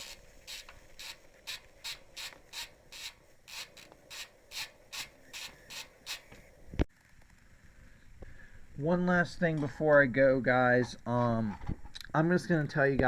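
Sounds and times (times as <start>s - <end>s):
bicycle hub ticking: 0.0s - 6.6s.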